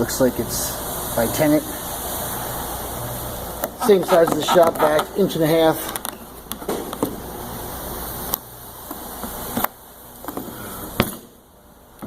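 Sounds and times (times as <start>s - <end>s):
low steady hiss: 0.0s - 12.0s.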